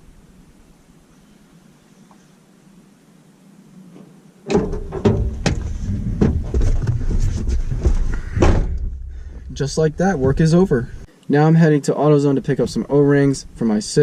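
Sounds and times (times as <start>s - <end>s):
faint hiss: 0.0s - 6.0s, 8.0s - 14.0s
knocks and clicks: 4.5s - 10.6s.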